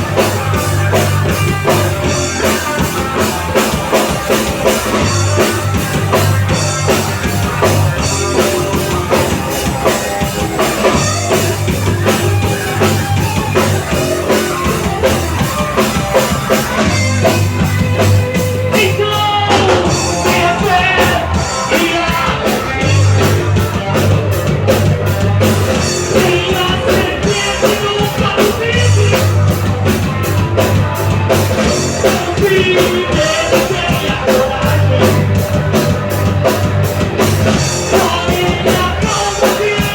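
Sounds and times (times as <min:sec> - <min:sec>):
bass guitar: 0:00.0 - 0:39.9
drum kit beat: 0:00.0 - 0:39.9
electric guitars: 0:00.0 - 0:39.9
person singing: 0:18.7 - 0:23.3, 0:25.9 - 0:29.5, 0:31.7 - 0:35.8, 0:37.7 - 0:39.9.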